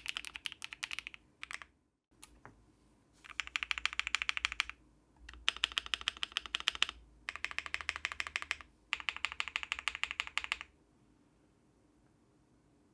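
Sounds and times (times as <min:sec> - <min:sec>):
rapid mechanical keyboard typing: 0:00.0 - 0:01.7, 0:03.2 - 0:10.7.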